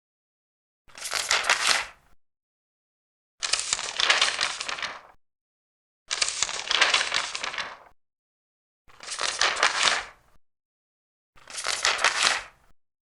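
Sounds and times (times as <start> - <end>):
paper pages being turned: 0.9 - 2.0, 3.4 - 5.2, 6.1 - 7.9, 8.9 - 10.2, 11.4 - 12.7.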